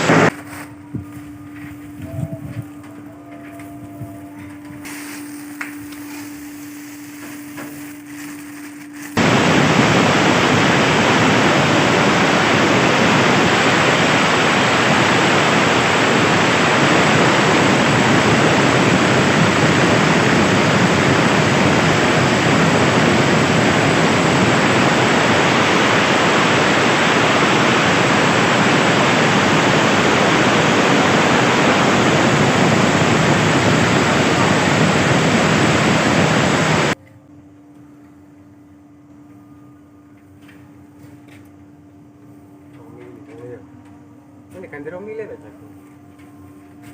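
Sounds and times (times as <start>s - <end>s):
loud even rushing noise: 0.0s - 0.4s, 9.2s - 37.0s
faint steady hum: 0.0s - 46.9s.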